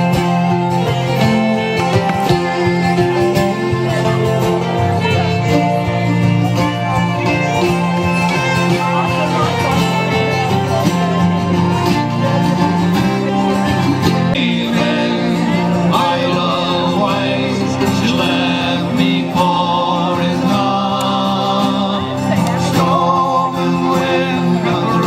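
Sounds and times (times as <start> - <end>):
folk band of squeezeboxes: 0.0 - 25.0.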